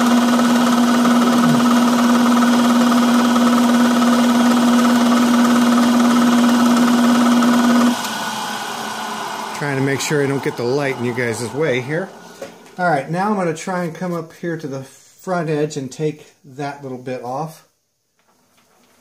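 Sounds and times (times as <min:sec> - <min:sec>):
electric motor humming: 0:00.0 - 0:12.8.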